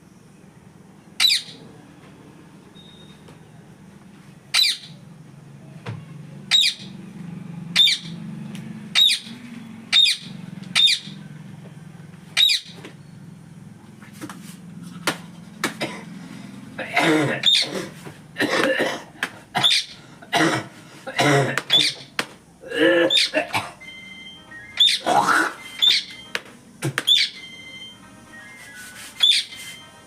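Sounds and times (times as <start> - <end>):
parakeet short sharp calls: 17.4 - 17.7, 19.6 - 19.9.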